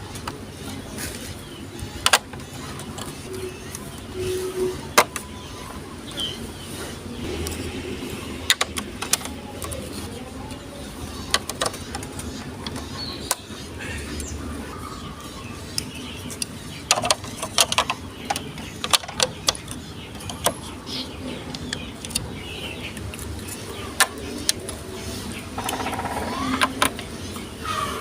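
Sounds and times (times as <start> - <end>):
low background hum: 0.0 - 28.0.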